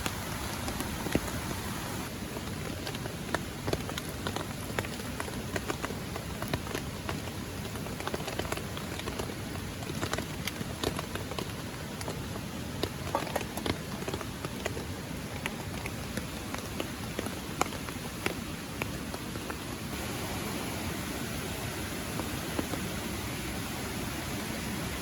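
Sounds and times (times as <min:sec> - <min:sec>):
raindrops ticking: 0:00.0 - 0:20.3, 0:21.5 - 0:23.4
rushing water: 0:00.0 - 0:25.0.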